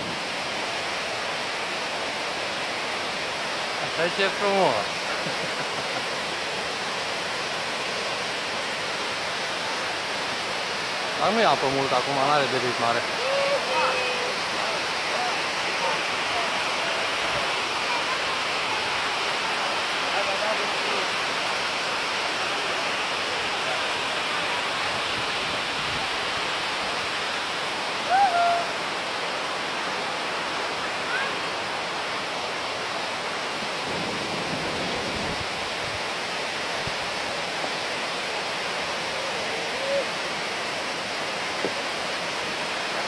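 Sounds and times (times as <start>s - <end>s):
waterfall rushing: 0.0s - 43.0s.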